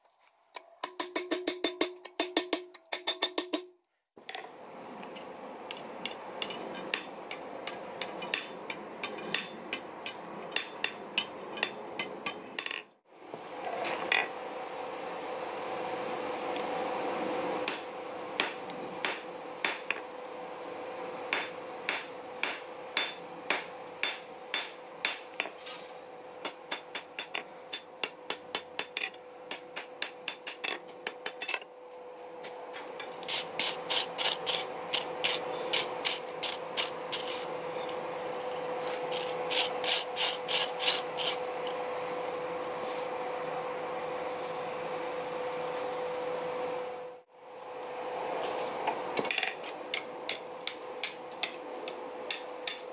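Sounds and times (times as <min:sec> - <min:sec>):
hammer striking steel on anvil: 0:00.8 - 0:03.7, 0:05.7 - 0:12.8, 0:17.7 - 0:20.0, 0:21.3 - 0:25.4, 0:26.4 - 0:31.6, 0:52.3 - 0:52.9.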